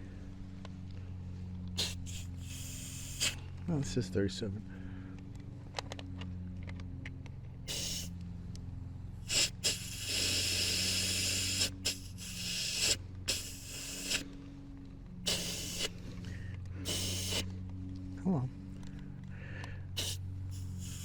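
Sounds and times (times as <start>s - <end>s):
compressor humming: 1.3s - 4.0s, 7.5s - 14.6s, 15.2s - 21.0s
air hissing in bursts: 1.8s - 3.5s, 7.7s - 8.2s, 9.2s - 14.3s, 15.3s - 16.2s, 16.8s - 17.5s, 20.0s - 21.0s.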